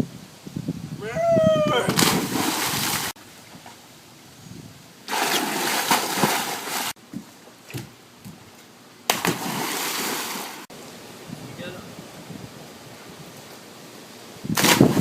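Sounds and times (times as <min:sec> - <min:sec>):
loud splash in pool: 0:01.9 - 0:03.2, 0:05.1 - 0:07.0, 0:09.1 - 0:10.7, 0:14.5 - 0:15.0
water sloshing: 0:01.9 - 0:03.8, 0:05.1 - 0:07.0, 0:09.1 - 0:10.7.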